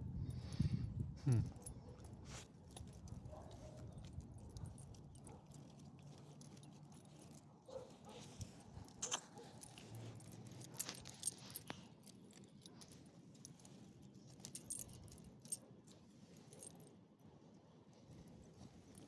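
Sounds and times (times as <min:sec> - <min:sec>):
faint low background: 0:00.0 - 0:19.0
small metal pieces jingling: 0:14.2 - 0:15.6.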